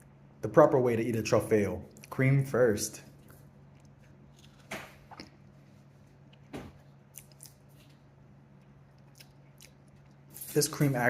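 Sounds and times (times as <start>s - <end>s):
soft mouth smacks: 7.1s - 7.9s, 8.6s - 10.2s
small eating clicks: 8.6s - 10.3s.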